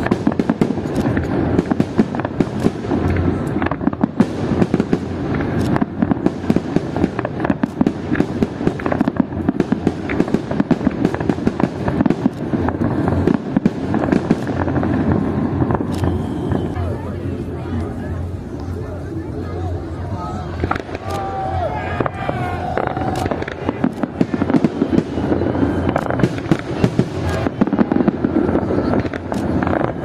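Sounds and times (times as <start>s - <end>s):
fireworks crackling bangs: 0.0s - 30.0s.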